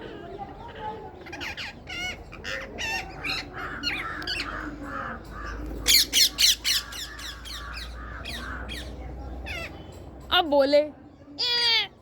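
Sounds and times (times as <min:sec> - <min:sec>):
parrot chirps and squawks: 0:01.2 - 0:04.6.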